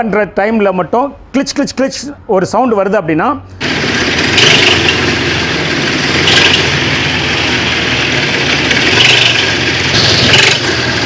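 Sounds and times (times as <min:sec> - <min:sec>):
car engine running: 0:03.6 - 0:11.0
squeaky drive belt: 0:03.6 - 0:11.0.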